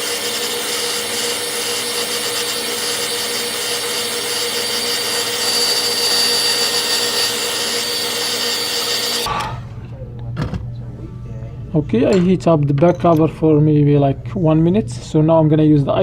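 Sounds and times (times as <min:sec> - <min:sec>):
heat gun fan humming and whining: 0:00.0 - 0:11.0.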